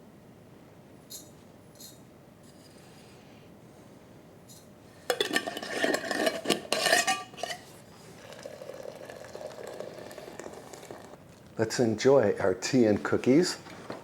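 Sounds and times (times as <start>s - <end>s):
teacups and dishes clinking: 5.1s - 11.1s.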